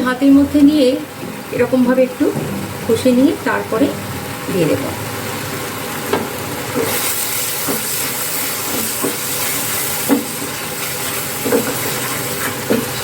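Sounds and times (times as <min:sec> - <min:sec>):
spices sizzling in hot oil: 0:00.0 - 0:13.0.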